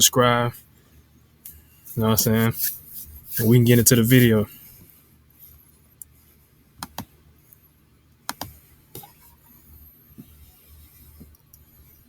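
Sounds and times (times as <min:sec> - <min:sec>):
faint low hum: 0:00.0 - 0:12.0
computer mouse clicks: 0:06.8 - 0:07.2, 0:08.3 - 0:09.4.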